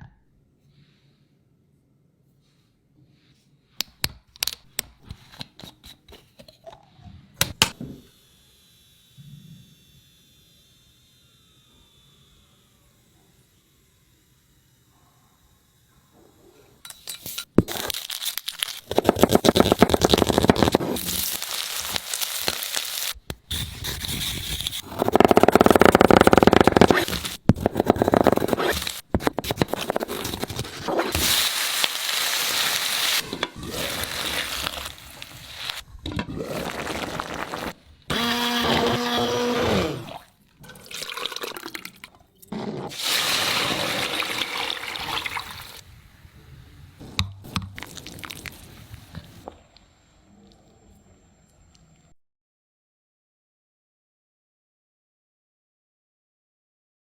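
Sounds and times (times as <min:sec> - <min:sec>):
running and pouring water: 0:29.6 - 0:35.8, 0:36.4 - 0:37.8, 0:39.8 - 0:42.3, 0:42.9 - 0:45.9, 0:47.8 - 0:49.4.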